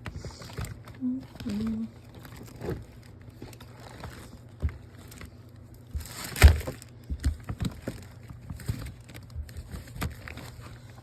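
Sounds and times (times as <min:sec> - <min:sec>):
rustling: 0:00.0 - 0:11.0
items knocking in storage bin: 0:03.9 - 0:10.4.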